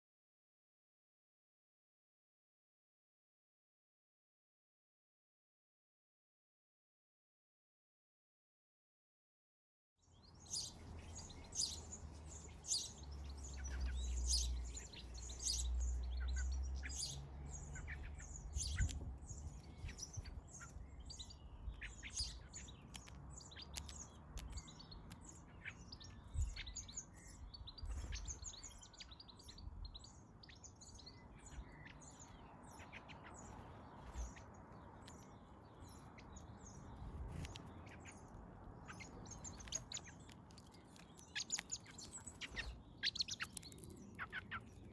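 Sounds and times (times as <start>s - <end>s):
birds chirping: 10.1s - 44.9s.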